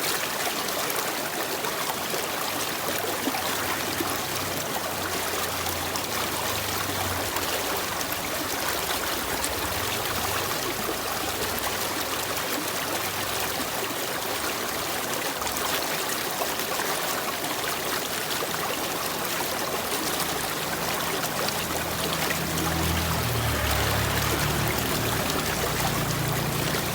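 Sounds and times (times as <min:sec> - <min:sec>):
stream trickling and splashing: 0:00.0 - 0:26.9.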